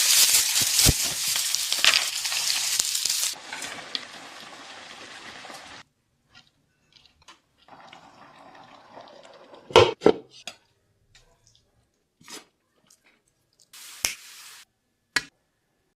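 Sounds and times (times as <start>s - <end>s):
cooking hiss: 0.0s - 5.8s, 13.7s - 14.7s.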